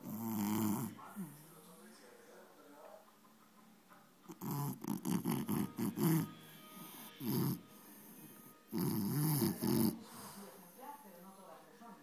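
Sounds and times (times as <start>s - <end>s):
dog snoring: 0.0s - 1.5s, 4.3s - 10.8s.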